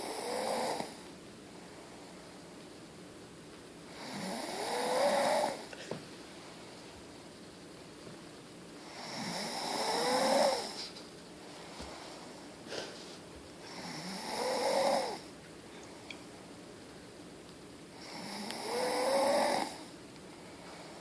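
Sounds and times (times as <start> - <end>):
long snores: 0.0 - 1.0, 3.9 - 5.7, 8.9 - 10.8, 13.7 - 15.2, 18.0 - 19.9.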